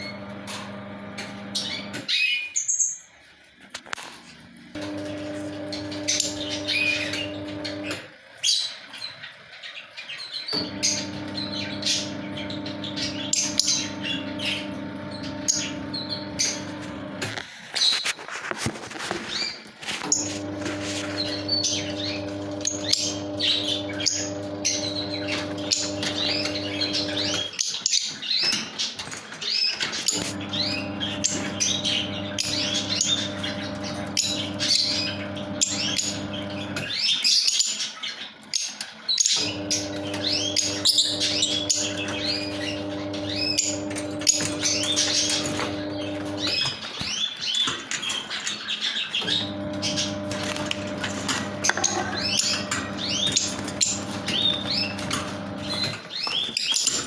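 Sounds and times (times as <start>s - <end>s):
lovebirds chirping: 4.8s - 18.0s, 19.2s - 57.0s.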